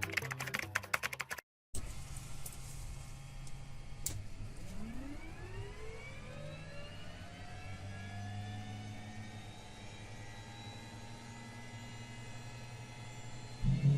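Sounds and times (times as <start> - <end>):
helicopter turbine whine: 3.2 - 13.9
steady low hum: 10.6 - 13.9.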